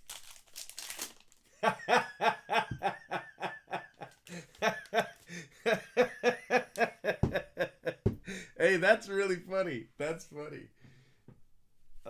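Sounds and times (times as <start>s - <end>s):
man laughing hard: 1.6s - 8.5s.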